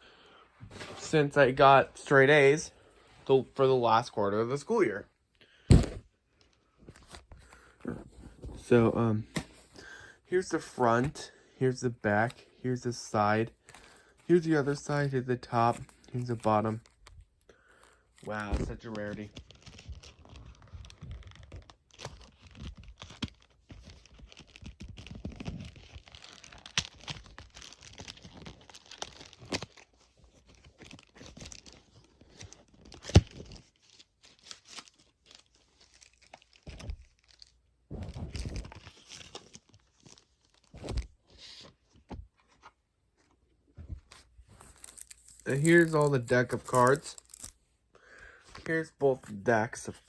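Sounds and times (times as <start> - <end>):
packaging rustling and crinkling: 15.8 - 47.6.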